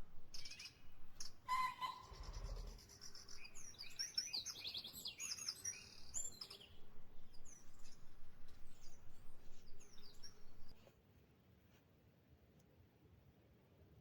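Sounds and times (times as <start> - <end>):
songbirds chirping: 0.0 - 10.8.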